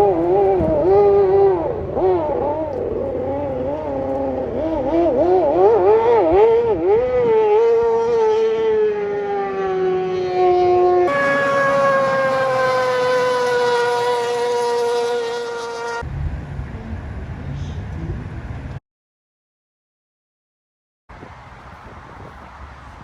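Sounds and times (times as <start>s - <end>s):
vehicle siren wailing: 0.0s - 16.0s.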